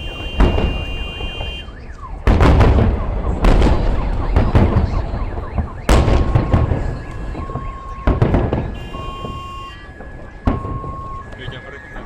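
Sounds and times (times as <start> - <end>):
car alarms wailing and beeping: 0.0 - 12.0
fireworks bangs and crackles: 0.0 - 12.0.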